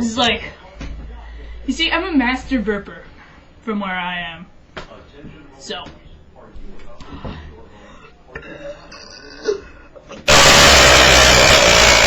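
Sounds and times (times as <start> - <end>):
loud long belch: 8.8 - 9.6, 10.3 - 12.0.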